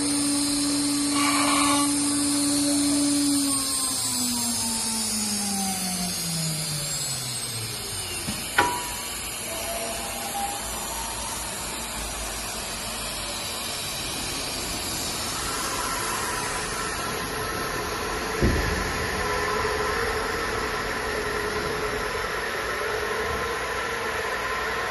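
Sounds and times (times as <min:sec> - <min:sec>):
cnc router whirring: 0:00.0 - 0:24.9
thump: 0:18.4 - 0:19.0.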